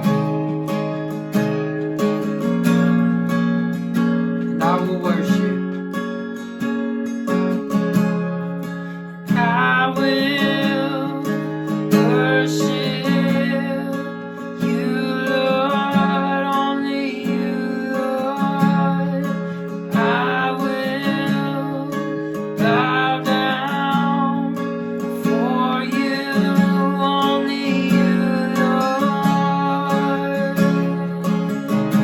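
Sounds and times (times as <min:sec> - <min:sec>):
acoustic guitar strumming: 0:00.0 - 0:32.0
person singing: 0:09.3 - 0:24.6, 0:25.2 - 0:32.0.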